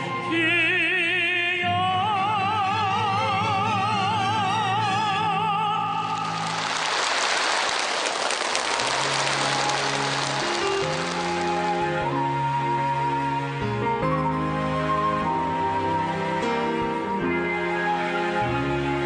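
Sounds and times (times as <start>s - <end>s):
orchestral backing: 0.0s - 19.0s
hissing rain-like noise: 6.2s - 11.8s.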